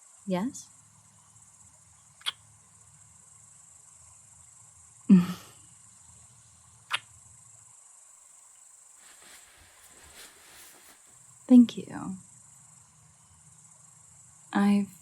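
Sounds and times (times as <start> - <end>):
cicadas chirring: 0.0 - 15.0
mouth click kiss: 2.2 - 2.4
person humming: 5.1 - 5.5.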